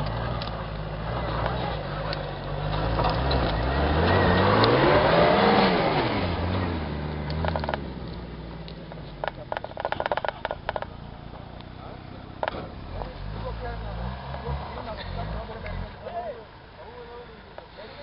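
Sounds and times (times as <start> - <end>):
off-road vehicle engine revving: 0.0 - 18.0
sharp clicks and rattles: 7.2 - 11.8.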